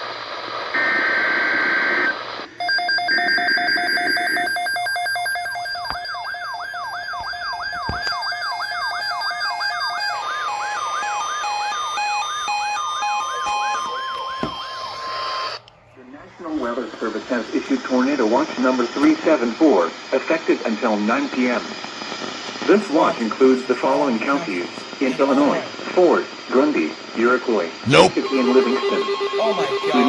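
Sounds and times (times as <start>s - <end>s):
siren-like electronic alarm beeps: 2.6s - 15.6s.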